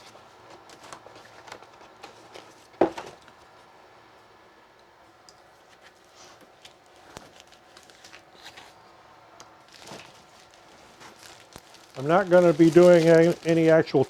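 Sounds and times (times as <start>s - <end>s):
plastic shrink wrap crinkling: 5.9s - 8.8s, 9.6s - 14.0s.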